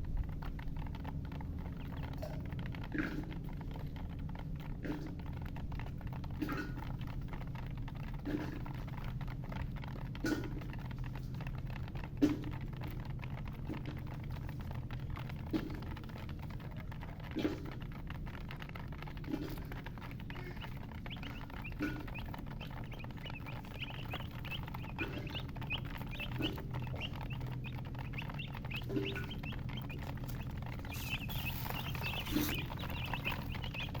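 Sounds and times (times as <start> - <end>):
baby chicks peeping: 0.4 - 34.0
low hum: 18.2 - 34.0.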